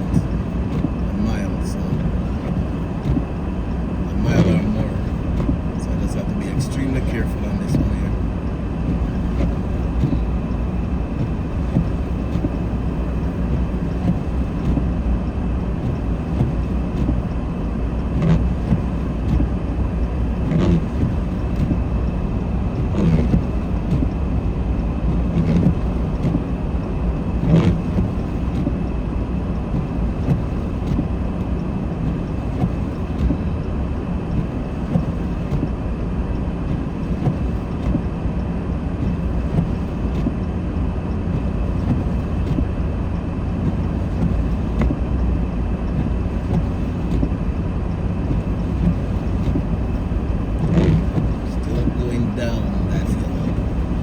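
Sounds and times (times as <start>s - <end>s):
engine and tyres rumbling: 0.0s - 54.0s.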